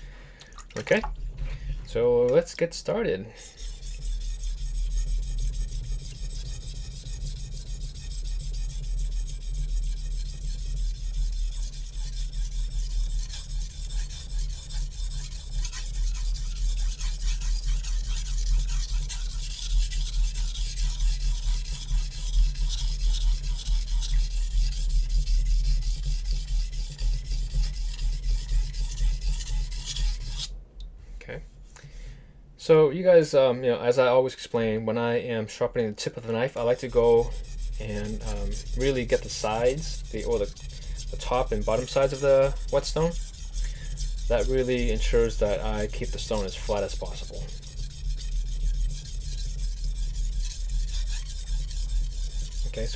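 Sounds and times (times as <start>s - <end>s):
knife rasping on whetstone: 3.3s - 30.5s, 36.5s - 52.9s
steady low hum: 18.8s - 52.9s.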